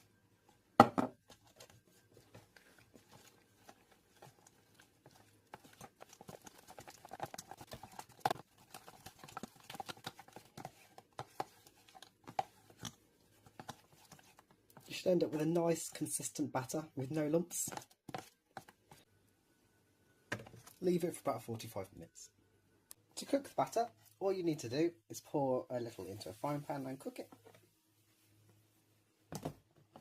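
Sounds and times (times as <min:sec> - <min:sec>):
whisk tapping mixing bowl: 0:01.5 - 0:18.7.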